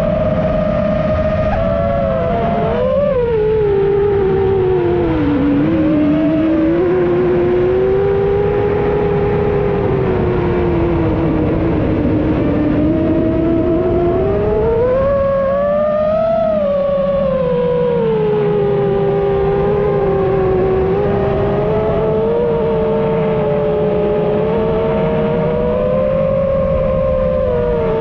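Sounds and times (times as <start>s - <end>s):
quadcopter motors whining: 0.6s - 9.4s.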